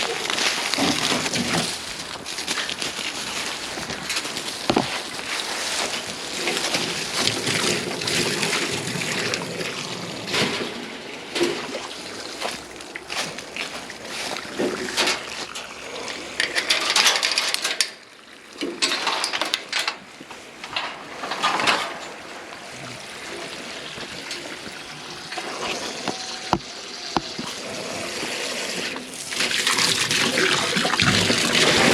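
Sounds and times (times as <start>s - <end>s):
knocks and handling noise: 0.8s - 8.3s, 23.4s - 27.6s
water splashing into a container: 23.0s - 31.9s.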